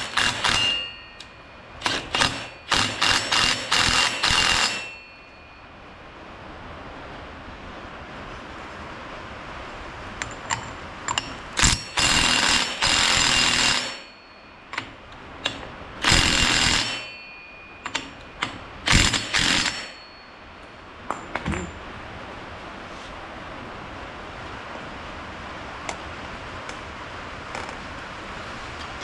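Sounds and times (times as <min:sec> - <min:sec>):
power tool running: 0:00.0 - 0:00.9, 0:01.8 - 0:05.0, 0:11.6 - 0:14.1, 0:16.0 - 0:17.2, 0:18.9 - 0:20.0
metallic clicks of hand tools: 0:00.0 - 0:04.9, 0:10.2 - 0:14.0, 0:14.7 - 0:17.1, 0:17.8 - 0:20.0.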